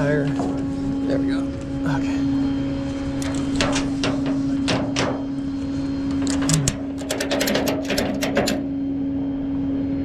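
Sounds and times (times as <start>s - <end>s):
engine hum: 0.0s - 10.0s
metal clicks and knocks: 3.2s - 5.3s, 6.1s - 8.7s.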